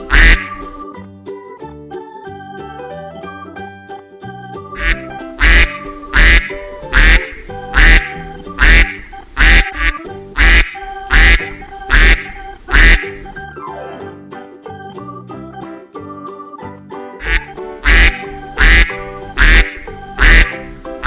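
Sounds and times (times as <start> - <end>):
duck quacking: 0.0 - 0.8, 4.8 - 13.4, 17.2 - 20.8
keyboard music: 0.0 - 21.0.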